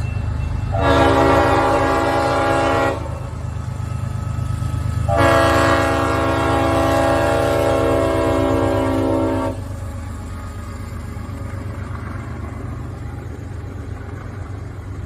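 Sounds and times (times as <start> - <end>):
low train rumble: 0.0 - 15.0
locomotive air horn blasts: 0.7 - 3.2, 5.1 - 9.7.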